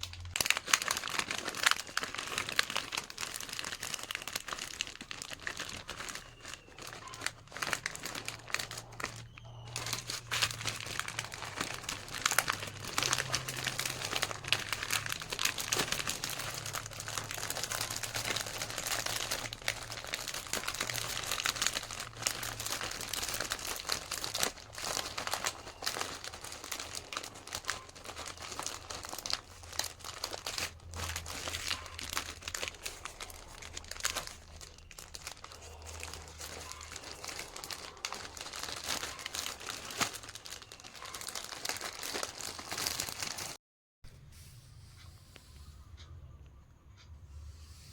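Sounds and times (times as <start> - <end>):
plastic wrapping crinkling: 0.0 - 43.6.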